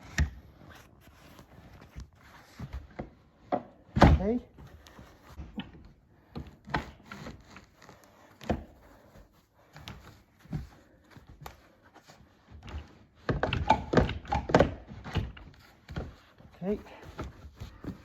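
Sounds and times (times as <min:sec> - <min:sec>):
wooden knocks and thuds: 0:02.5 - 0:07.5, 0:12.6 - 0:18.0.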